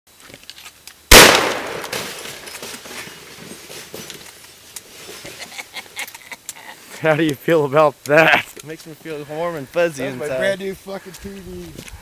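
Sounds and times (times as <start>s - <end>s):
shotgun blast: 1.1s - 2.4s.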